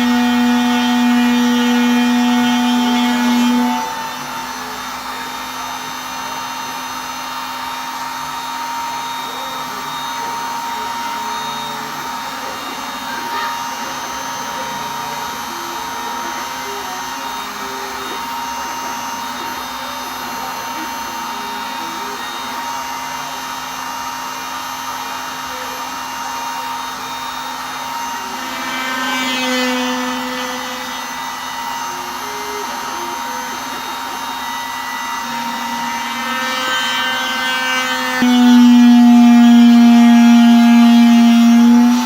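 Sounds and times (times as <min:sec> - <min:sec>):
spindle motor whining: 0:00.0 - 0:42.0
stepper motor tones: 0:00.0 - 0:42.0.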